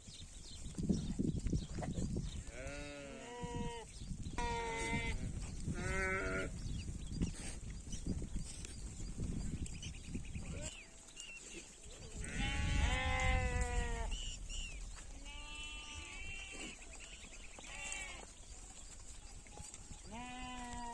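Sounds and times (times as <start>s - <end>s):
sheep bleating: 4.4s - 6.5s, 12.2s - 14.1s, 15.1s - 16.8s, 17.6s - 18.3s, 20.1s - 20.9s.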